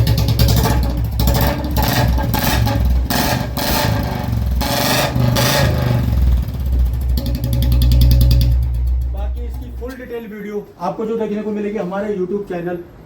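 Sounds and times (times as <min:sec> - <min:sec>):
single-cylinder engine running: 0:00.0 - 0:10.1.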